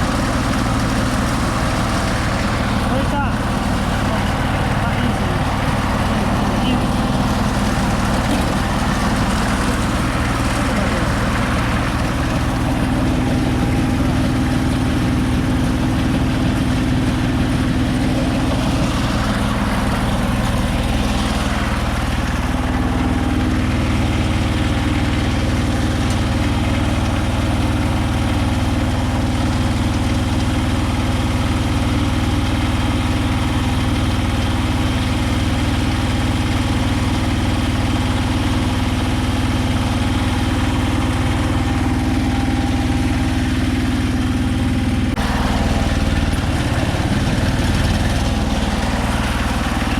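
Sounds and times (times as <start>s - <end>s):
harvester engine drone: 0.0s - 49.9s.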